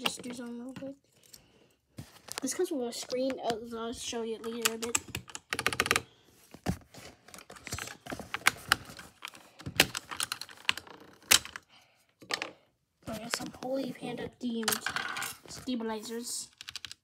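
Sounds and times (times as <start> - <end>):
mechanical keyboard keys clicking: 4.4 - 6.0.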